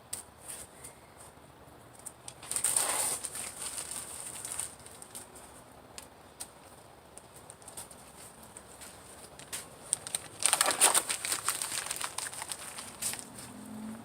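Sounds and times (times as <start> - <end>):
paper burning crackles: 2.3 - 5.5, 6.4 - 13.4.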